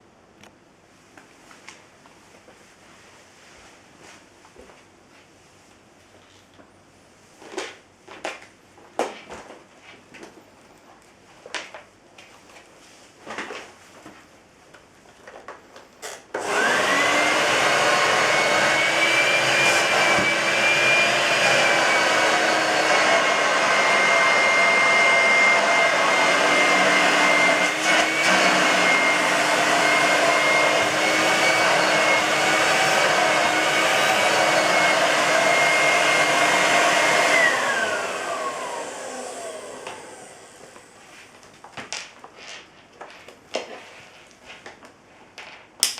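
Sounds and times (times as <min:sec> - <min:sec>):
vacuum cleaner motor whining: 0:16.0 - 0:41.2.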